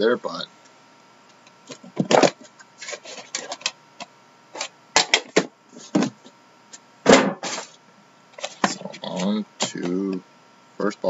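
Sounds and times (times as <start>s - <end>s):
packaging rustling and scraping: 1.6s - 3.7s.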